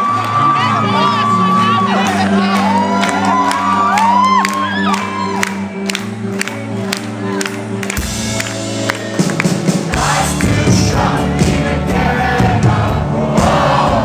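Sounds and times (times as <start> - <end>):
crowd whooping and cheering: 0.0 - 9.7
bass line: 0.0 - 14.0
live rock band playing: 0.1 - 14.0.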